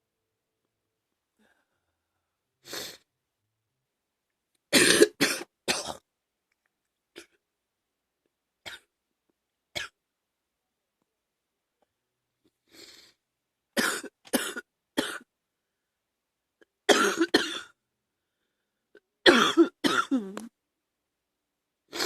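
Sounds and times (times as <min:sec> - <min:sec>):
person coughing: 0:04.7 - 0:06.0, 0:13.8 - 0:15.3, 0:16.9 - 0:17.8, 0:19.3 - 0:20.5.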